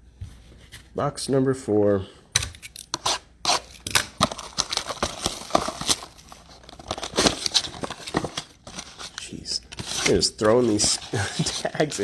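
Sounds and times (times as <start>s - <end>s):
plastic wrap and cardboard ripping: 3.5s - 9.2s.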